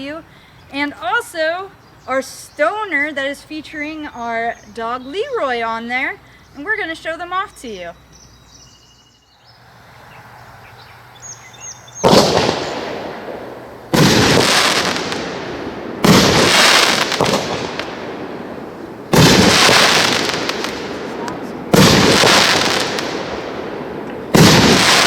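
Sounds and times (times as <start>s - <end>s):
firework bangs: 12.0s - 25.0s
firework hiss: 12.0s - 25.0s.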